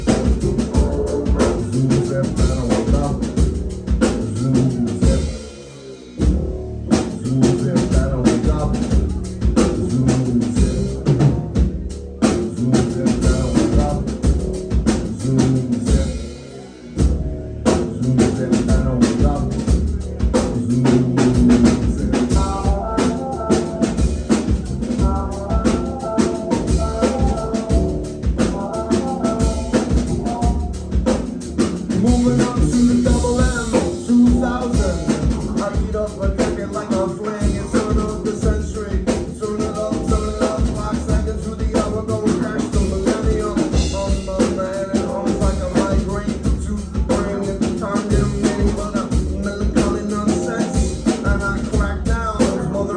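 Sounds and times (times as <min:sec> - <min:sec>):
bass: 0:00.0 - 0:52.9
drum kit: 0:00.0 - 0:52.9
repeated high notes: 0:10.6 - 0:36.3.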